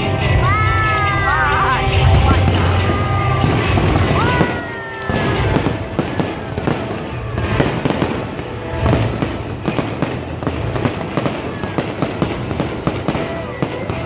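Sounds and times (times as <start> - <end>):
low rumble: 0.1 - 4.4
fireworks crackling and popping: 1.4 - 14.0.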